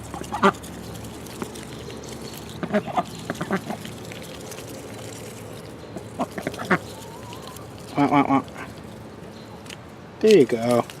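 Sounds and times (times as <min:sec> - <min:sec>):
ducks quacking: 0:02.6 - 0:03.9, 0:06.0 - 0:08.8.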